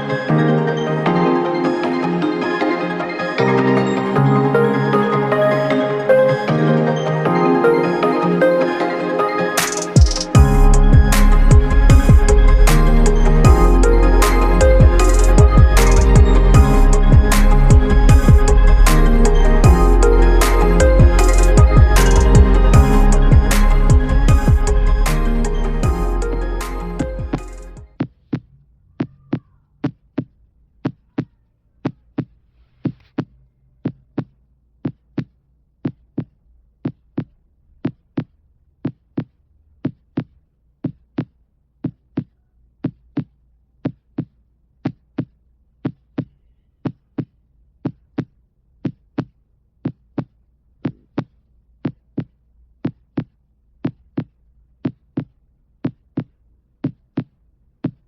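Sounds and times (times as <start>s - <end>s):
heartbeat: 10.0s - 14.0s, 14.6s - 19.0s, 19.6s - 20.0s, 20.8s - 25.1s, 27.0s - 28.5s.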